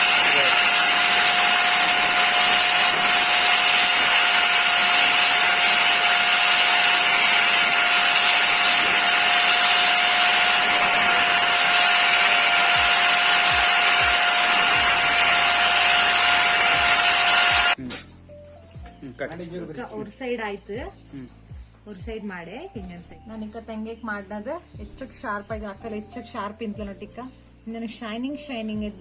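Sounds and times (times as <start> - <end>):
angle grinder grinding steel: 0.0 - 17.8.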